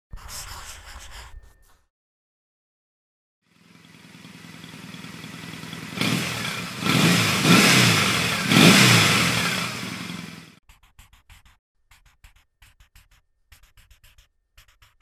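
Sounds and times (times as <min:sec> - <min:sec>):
engine running and revving: 0:03.5 - 0:10.6.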